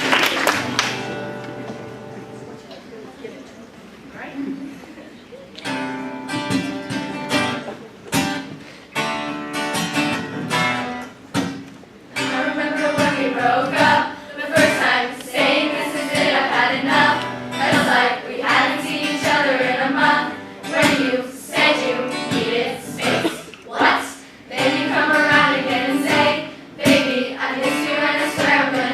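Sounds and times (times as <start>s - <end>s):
strummed guitar: 0.6s - 2.8s, 5.6s - 28.9s
choir singing: 12.2s - 28.9s.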